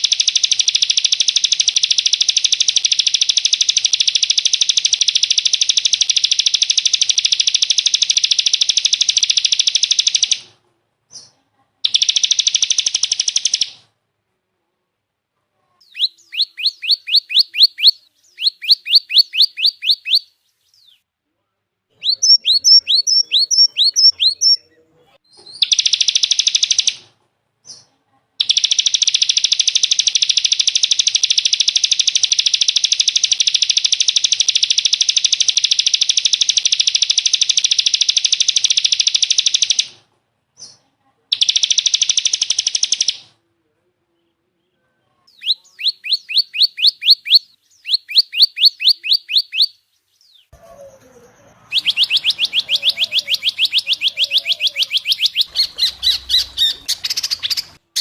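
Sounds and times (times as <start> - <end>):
songbird buzzy trill: 0.0 - 10.5, 15.8 - 21.0, 22.0 - 24.7, 28.4 - 40.0, 45.3 - 50.6, 51.6 - 58.0
bird whistled notes: 22.0 - 24.6, 51.7 - 57.8.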